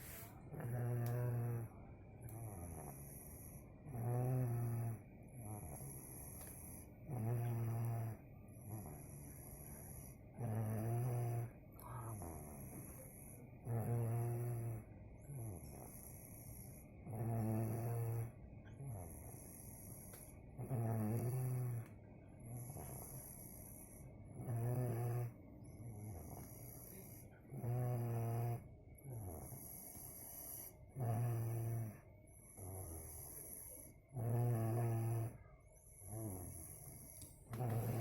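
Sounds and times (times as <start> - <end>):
soft breaths: 0.0 - 4.0, 4.7 - 10.5, 11.3 - 13.6, 18.2 - 20.6, 21.6 - 24.4, 25.2 - 27.6, 28.6 - 31.0, 31.8 - 34.2, 35.3 - 38.0
child snoring: 0.0 - 38.0.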